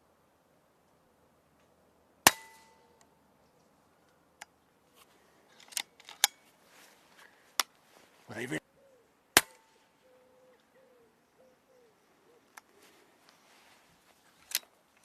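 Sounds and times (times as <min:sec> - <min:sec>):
metallic clicks of rifle lever: 0:05.5 - 0:06.4, 0:14.3 - 0:15.0
rifle lever rattle: 0:05.5 - 0:06.4.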